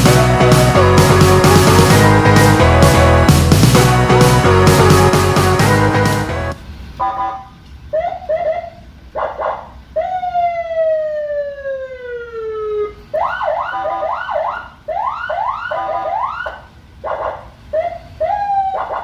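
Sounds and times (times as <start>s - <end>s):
electronic vehicle siren: 7.0s - 19.0s.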